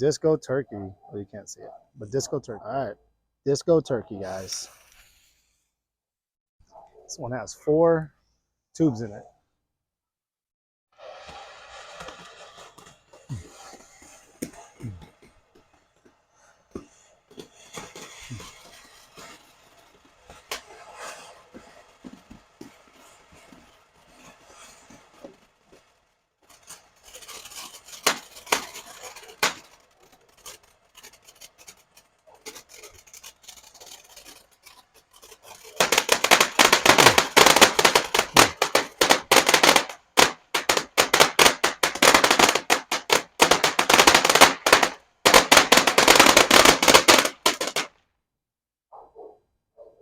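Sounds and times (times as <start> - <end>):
firework crackling: 4.2 - 5.5, 11.0 - 48.0.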